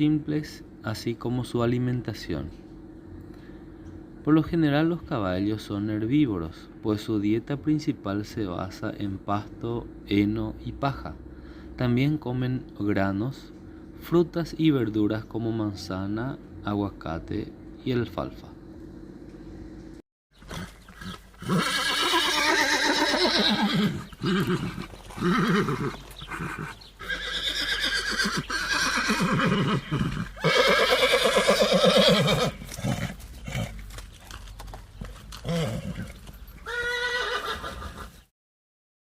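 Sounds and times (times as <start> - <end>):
horse whinnying: 20.4 - 33.9, 35.4 - 38.2.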